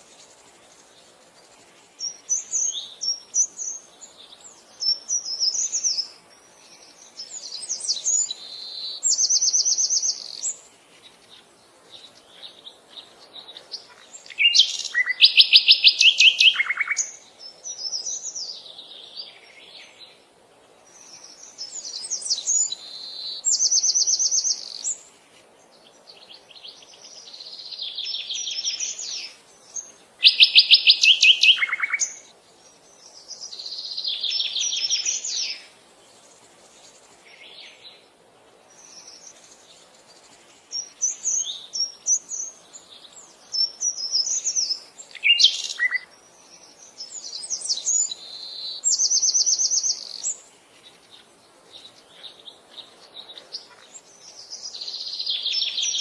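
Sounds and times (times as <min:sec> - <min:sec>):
birds chirping and whistling: 0:14.3 - 0:17.2, 0:28.0 - 0:32.2, 0:43.6 - 0:46.1.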